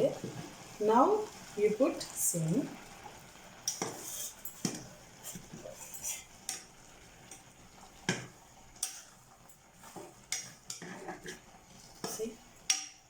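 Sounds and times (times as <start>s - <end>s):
metal utensils clinking on pot: 3.6s - 6.7s, 8.1s - 11.4s, 12.0s - 13.0s.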